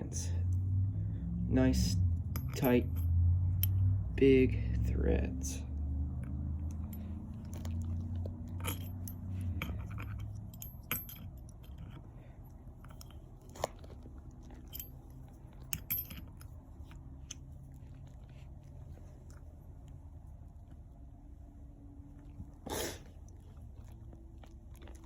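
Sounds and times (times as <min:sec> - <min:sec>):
low hum: 0:00.0 - 0:25.0
small metal tools clinking: 0:01.8 - 0:03.8, 0:06.7 - 0:17.4.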